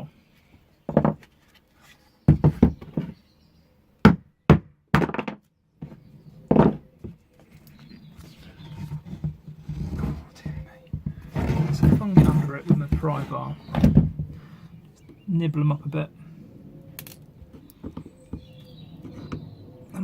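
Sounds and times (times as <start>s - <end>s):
hammer thunking on wood: 2.3s - 3.1s, 4.0s - 5.4s.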